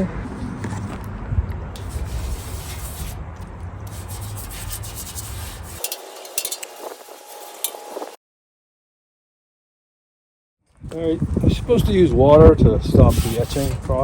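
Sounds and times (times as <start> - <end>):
scrubbing on steel: 1.8 - 3.2, 3.8 - 8.2, 13.0 - 14.0.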